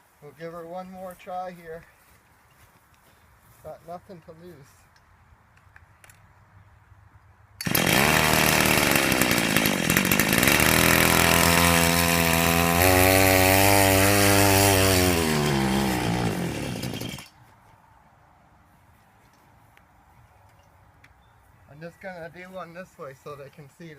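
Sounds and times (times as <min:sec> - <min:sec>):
two-stroke engine revving: 0:07.6 - 0:17.3.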